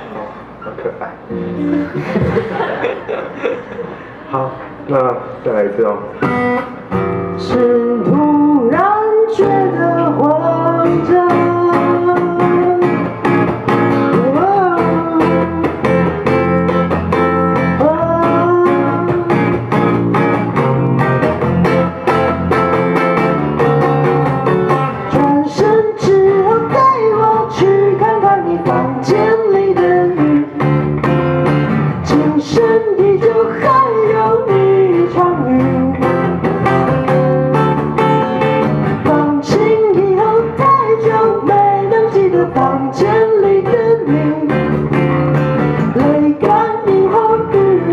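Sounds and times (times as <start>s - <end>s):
plucked guitar: 0.4s - 3.2s, 6.1s - 47.9s
person singing: 7.4s - 13.2s, 14.1s - 16.1s, 17.6s - 19.6s, 25.0s - 30.7s, 32.0s - 36.1s, 39.0s - 44.8s, 45.8s - 47.9s.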